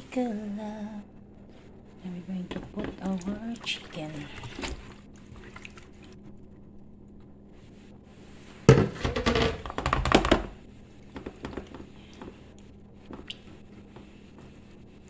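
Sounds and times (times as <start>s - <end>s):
clattering handling noise: 8.6s - 10.6s
dish thunk: 8.7s - 10.5s.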